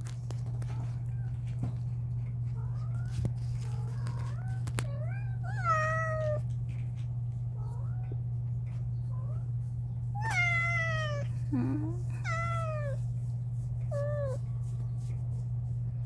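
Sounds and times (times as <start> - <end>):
steady low hum: 0.0 - 16.0
kitten meowing: 5.1 - 6.4, 10.2 - 11.3, 12.2 - 13.0.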